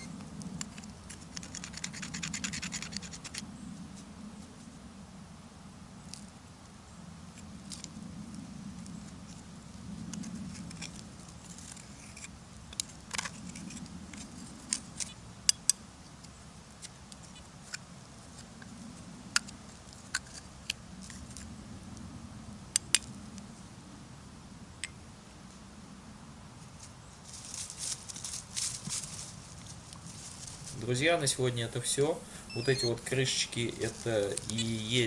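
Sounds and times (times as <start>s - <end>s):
digging in soil: 30.2s - 35.0s.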